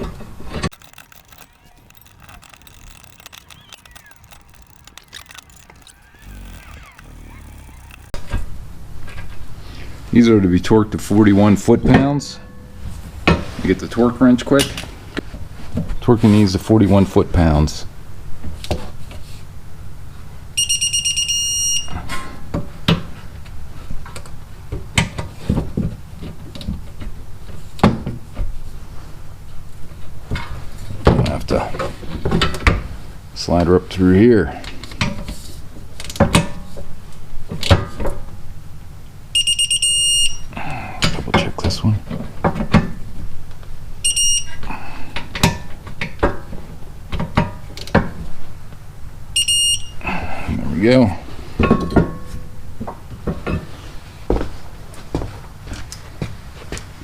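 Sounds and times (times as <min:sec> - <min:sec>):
fast electronic beeping: 0:00.7 - 0:08.2
metallic tool clicks and knocks: 0:00.7 - 0:08.2.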